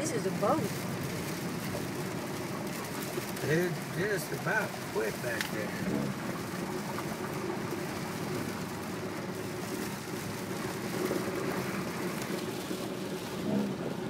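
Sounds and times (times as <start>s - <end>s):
car engine running: 0.0s - 14.0s
rushing water noise: 0.0s - 14.0s.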